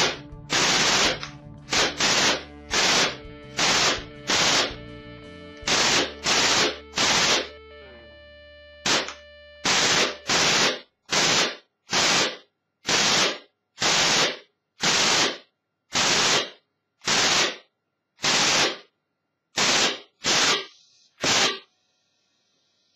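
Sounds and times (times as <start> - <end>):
gunshots: 0.0 - 4.8, 5.6 - 7.5, 8.8 - 17.6, 18.2 - 18.9, 19.6 - 21.7.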